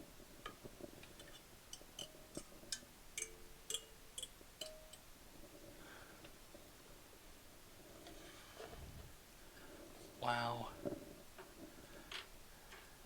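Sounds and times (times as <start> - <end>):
objects clicking and tapping: 0.4 - 5.0.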